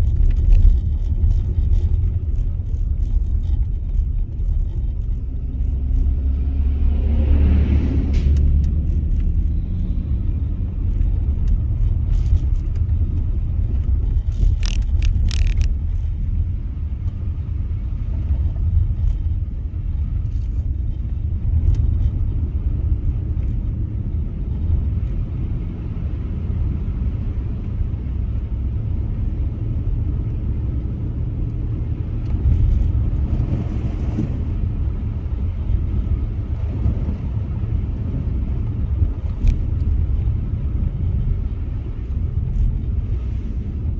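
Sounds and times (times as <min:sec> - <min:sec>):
car engine and tyres rumbling: 0:00.0 - 0:43.9.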